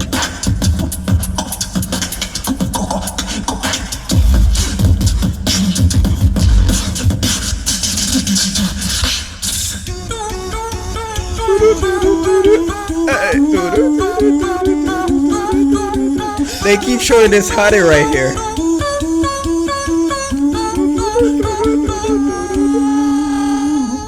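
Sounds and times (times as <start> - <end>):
person singing wavering melody: 13.0 - 14.3, 16.5 - 18.4
deep vocal bass line: 13.1 - 13.9.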